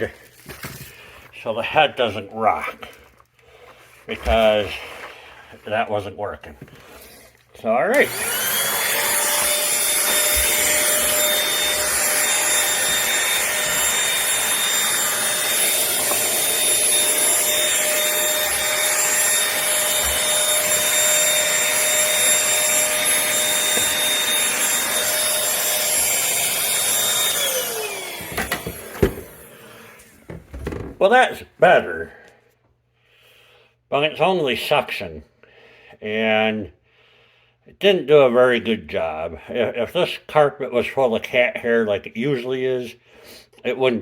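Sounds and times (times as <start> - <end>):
stick vacuum high whine: 7.9 - 30.8.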